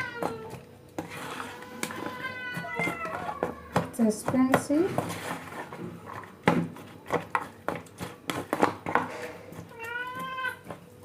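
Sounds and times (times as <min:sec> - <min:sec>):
cat meowing: 0:01.6 - 0:03.8, 0:09.7 - 0:10.6.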